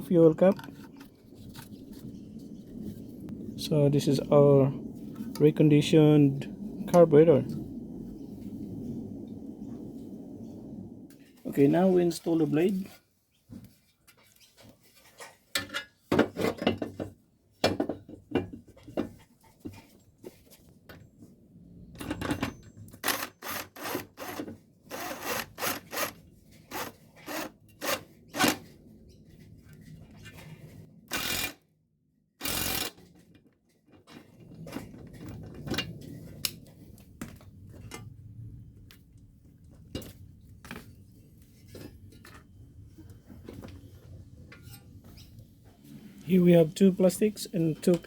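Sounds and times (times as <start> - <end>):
rasping bursts: 23.0 - 28.6.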